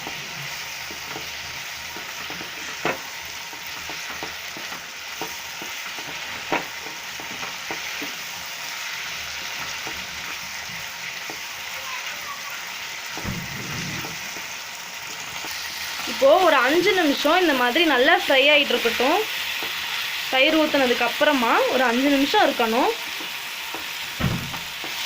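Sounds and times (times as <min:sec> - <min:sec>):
chicken sizzling in oil: 0:00.0 - 0:25.0
low thump: 0:13.2 - 0:14.2, 0:24.2 - 0:24.7.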